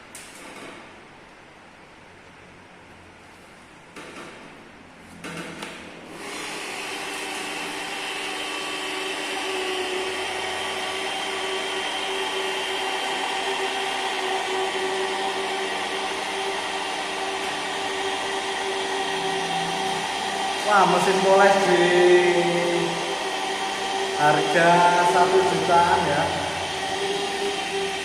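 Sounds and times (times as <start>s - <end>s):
polisher motor whining: 6.1s - 28.0s.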